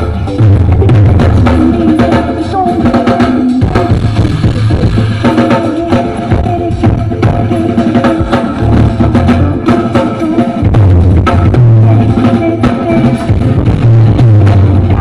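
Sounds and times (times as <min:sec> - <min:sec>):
heavy sustained bass line: 0:00.0 - 0:01.8
instrumental music with drums: 0:00.0 - 0:15.0.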